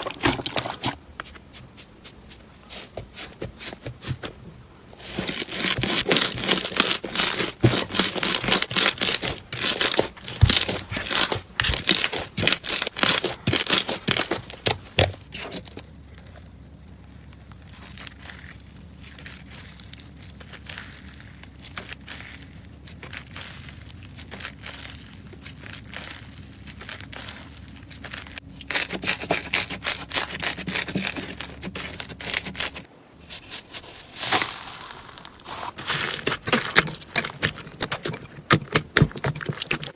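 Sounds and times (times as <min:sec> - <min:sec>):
slime crackling and popping: 0:06.8 - 0:30.9.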